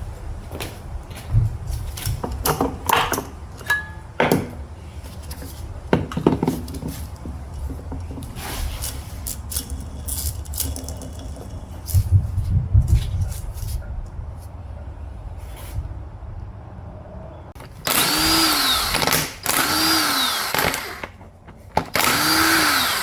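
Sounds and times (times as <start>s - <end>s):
metal tools clinking on transmission case: 1.9s - 12.1s
low rumble: 9.7s - 17.6s.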